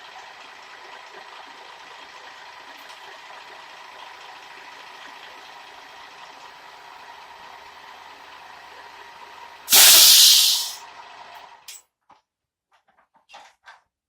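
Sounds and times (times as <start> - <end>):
loud hissing rush: 9.7 - 10.8.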